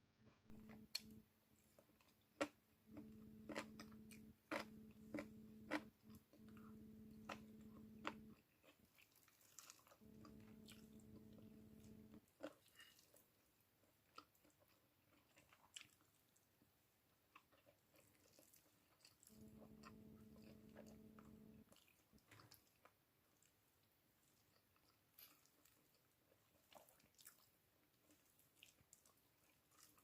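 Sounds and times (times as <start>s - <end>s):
faint steady hum: 0.3s - 8.8s, 9.8s - 12.5s, 19.1s - 22.6s
chewing and biting: 1.8s - 13.2s, 17.3s - 23.5s, 24.2s - 30.0s.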